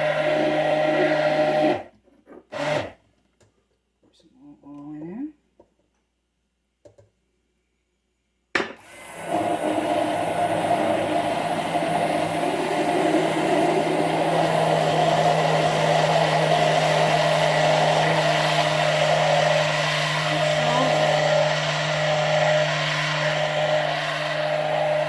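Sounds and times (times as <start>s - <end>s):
immersion blender running: 0.0s - 1.9s, 2.5s - 3.0s, 8.8s - 25.0s.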